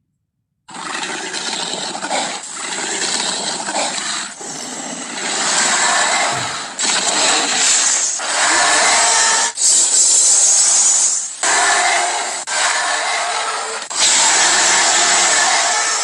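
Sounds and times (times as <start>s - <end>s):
dinosaur roaring calls: 0.9s - 7.6s.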